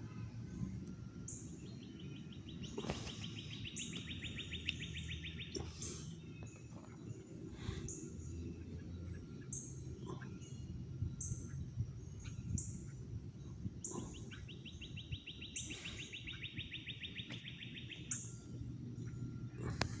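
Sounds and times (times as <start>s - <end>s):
bird chirps sweeping downward: 1.2s - 6.8s, 13.9s - 19.3s
long dry bird trill: 1.2s - 20.0s.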